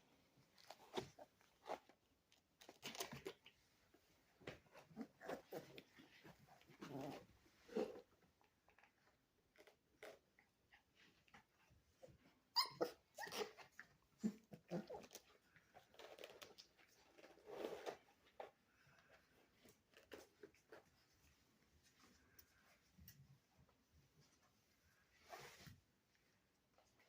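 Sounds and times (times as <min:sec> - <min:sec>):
puppies whining and grunting: 0:04.7 - 0:08.1, 0:11.8 - 0:16.4
puppy high cry: 0:12.5 - 0:13.6.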